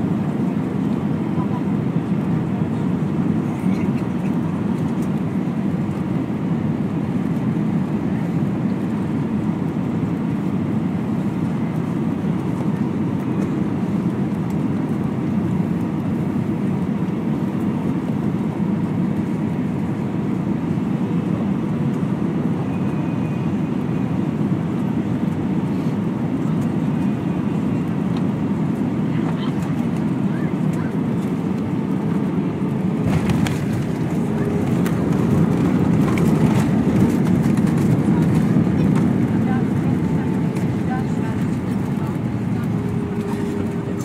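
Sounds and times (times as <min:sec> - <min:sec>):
airliner engines rumbling: 0:00.0 - 0:44.0
airflow around fuselage: 0:29.7 - 0:44.0.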